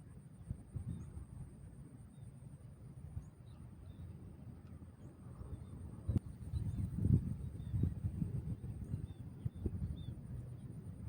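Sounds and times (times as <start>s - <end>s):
wind buffeting microphone: 6.0s - 11.0s.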